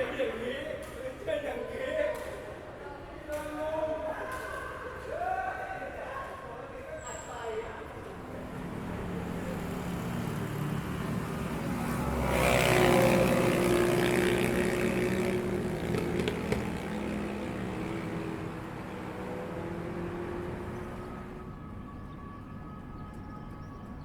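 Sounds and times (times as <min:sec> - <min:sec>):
city street traffic: 0:07.3 - 0:24.0
vehicle passing close: 0:08.2 - 0:21.7.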